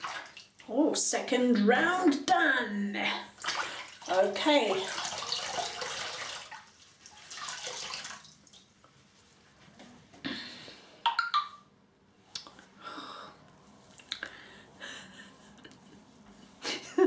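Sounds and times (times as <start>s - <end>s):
water splashing: 0.0s - 0.7s, 3.3s - 8.8s.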